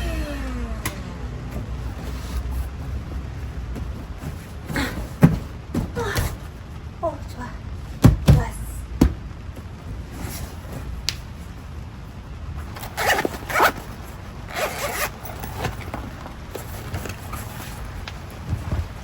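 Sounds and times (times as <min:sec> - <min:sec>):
zipper being pulled: 0:12.8 - 0:15.9.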